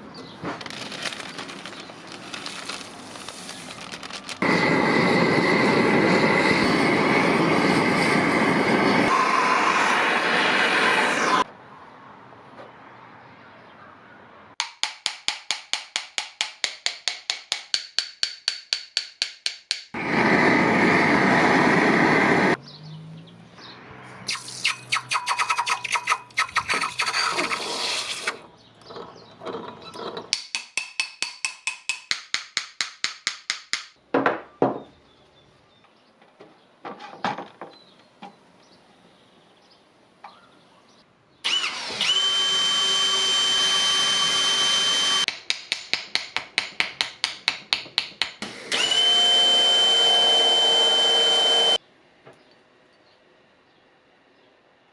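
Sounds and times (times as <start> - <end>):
small power tool whining: 4.4 - 11.5, 41.4 - 45.3, 48.4 - 51.8
steady rushing noise: 4.4 - 11.5
fast even tool strokes: 24.3 - 28.4.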